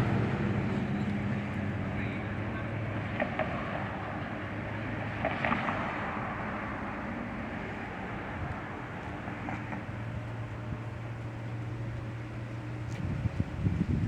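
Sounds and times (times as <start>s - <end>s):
street traffic hum: 0.0s - 14.0s.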